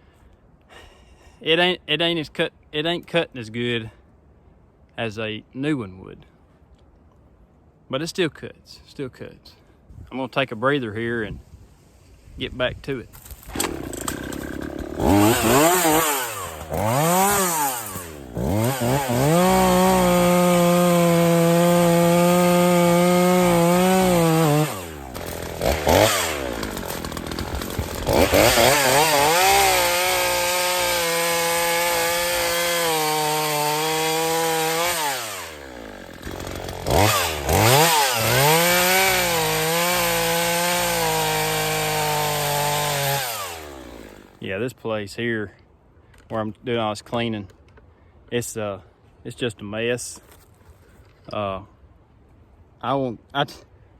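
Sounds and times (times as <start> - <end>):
chainsaw revving: 13.4 - 44.4.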